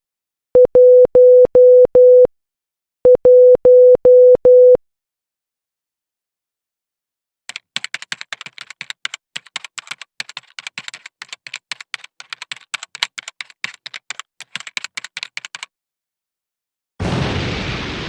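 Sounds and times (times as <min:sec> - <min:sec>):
keys clicking rapidly: 0:07.5 - 0:15.7.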